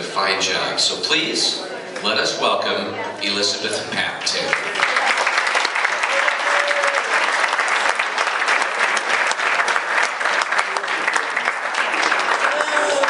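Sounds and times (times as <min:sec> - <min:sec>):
audience applauding: 0:04.3 - 0:13.0
faint voice: 0:12.4 - 0:13.0.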